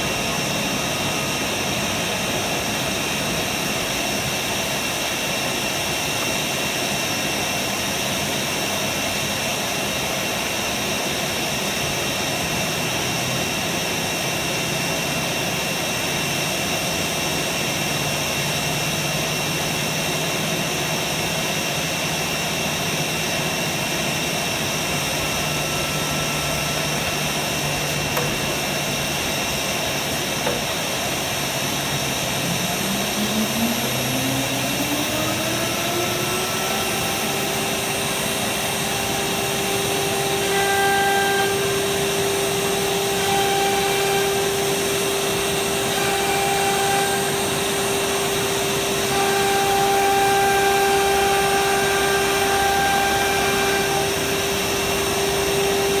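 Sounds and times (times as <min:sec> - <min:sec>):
router spindle whine: 0:00.0 - 0:56.0.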